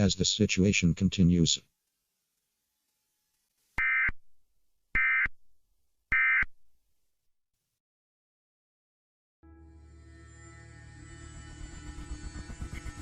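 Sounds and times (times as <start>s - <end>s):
short electronic data bursts: 3.8s - 4.2s, 5.0s - 5.3s, 6.1s - 6.5s.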